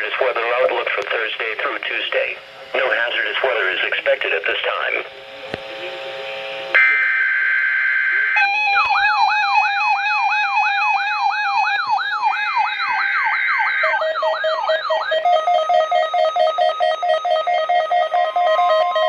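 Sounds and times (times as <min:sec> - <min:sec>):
rising siren-like electronic sweep: 0:06.8 - 0:19.0
rapid pulsing beep: 0:12.6 - 0:19.0.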